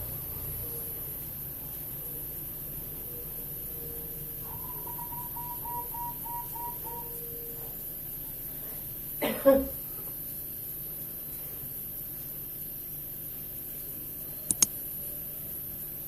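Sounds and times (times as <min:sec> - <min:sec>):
person coughing: 0:09.2 - 0:09.7.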